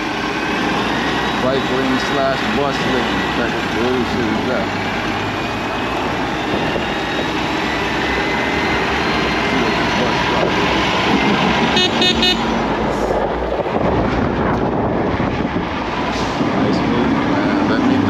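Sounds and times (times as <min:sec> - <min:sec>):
wind and road noise: 0:00.0 - 0:18.0
high-pitched horn beeps: 0:11.7 - 0:12.5.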